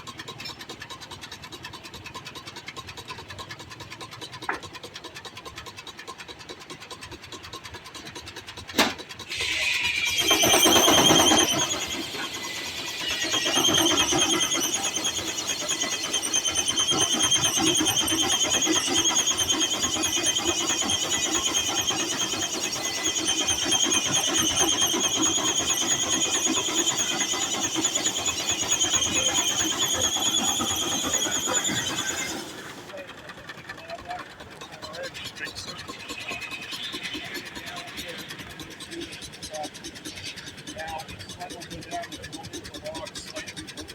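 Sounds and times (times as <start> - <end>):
saw cutting log rumble: 7.1 - 33.8
circular saw whining: 8.7 - 43.9.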